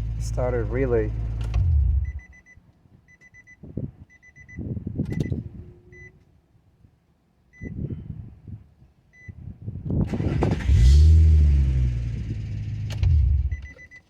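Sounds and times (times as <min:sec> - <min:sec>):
car engine cranking and idling: 0:00.0 - 0:02.4, 0:10.0 - 0:14.0.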